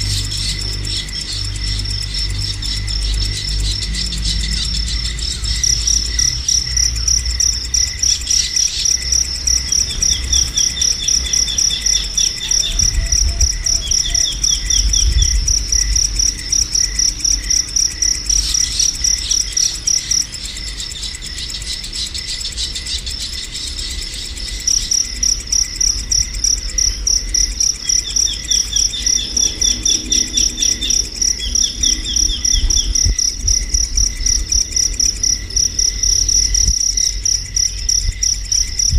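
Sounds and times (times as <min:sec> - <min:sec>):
cricket chirring: 0:00.0 - 0:38.9
bird chirps: 0:28.0 - 0:33.1.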